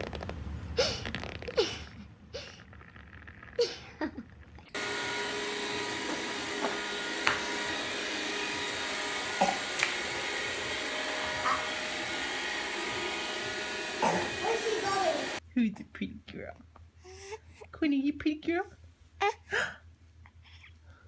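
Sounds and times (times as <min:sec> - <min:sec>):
small electric motor drone: 0:04.8 - 0:15.4.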